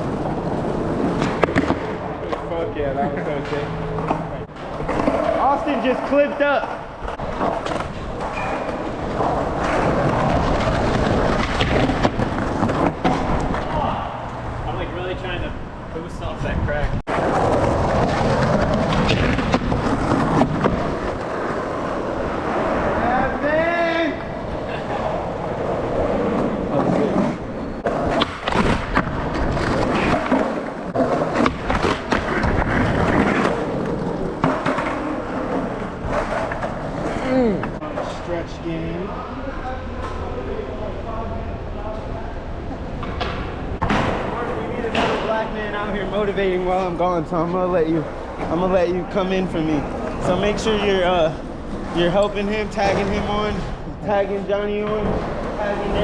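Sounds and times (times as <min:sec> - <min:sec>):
skateboard clacking on ground: 0:00.0 - 0:02.5
skateboard clacks: 0:00.0 - 0:02.5, 0:24.2 - 0:38.0
skateboard wheels rolling on concrete: 0:00.0 - 0:39.1, 0:42.0 - 0:56.0.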